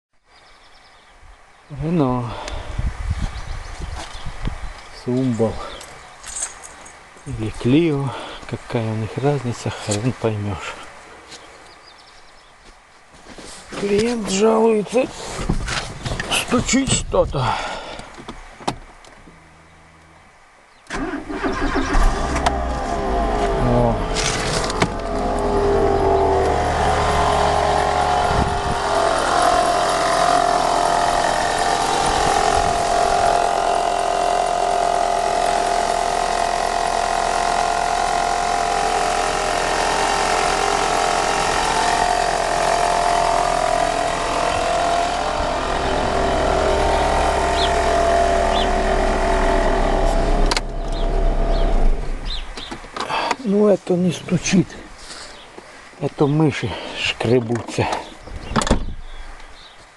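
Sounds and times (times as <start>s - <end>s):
scratching noise from engine bay: 15.1s - 17.0s, 20.9s - 53.0s
car engine idling: 18.9s - 20.2s, 20.9s - 53.4s.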